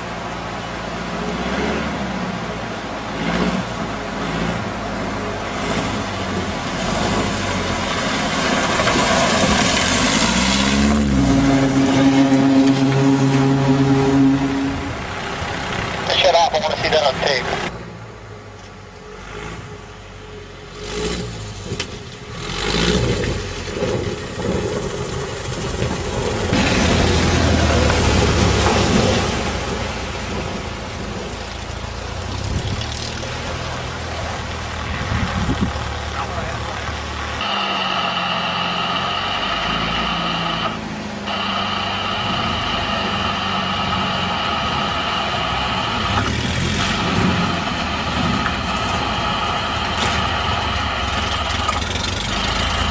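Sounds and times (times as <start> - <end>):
engine running: 0.0 - 52.9
noisy rush: 0.0 - 52.9
high-pitched warning tone: 37.4 - 46.3.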